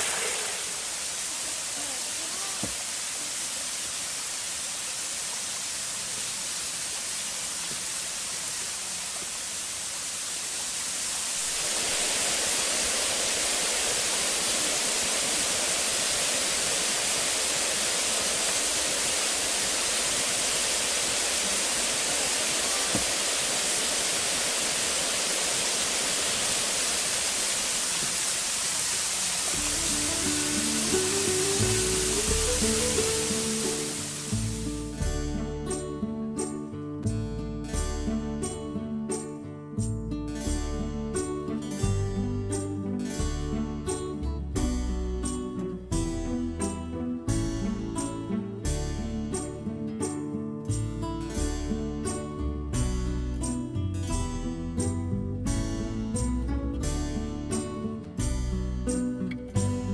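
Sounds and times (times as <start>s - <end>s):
waterfall rushing: 0.0s - 35.1s.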